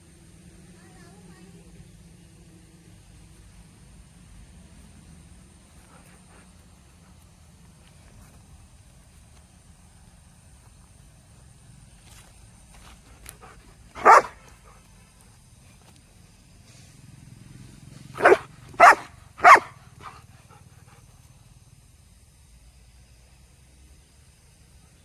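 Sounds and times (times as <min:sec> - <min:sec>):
dog barking: 0:14.0 - 0:14.4, 0:18.2 - 0:20.2.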